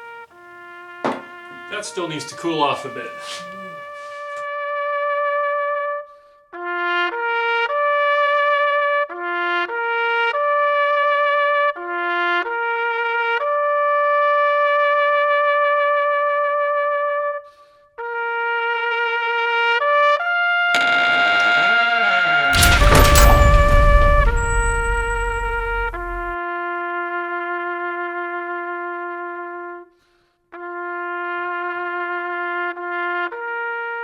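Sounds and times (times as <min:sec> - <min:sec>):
brass instrument melody: 0:01.1 - 0:04.4, 0:20.8 - 0:26.4
loud noisy burst: 0:20.8 - 0:26.4.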